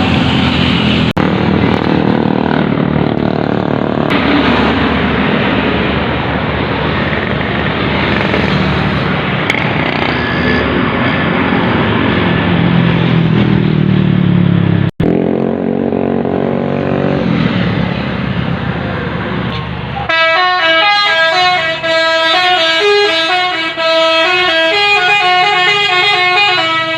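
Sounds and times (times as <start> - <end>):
traffic passing close by: 0.0 - 26.9
heavy engine note: 17.2 - 26.9.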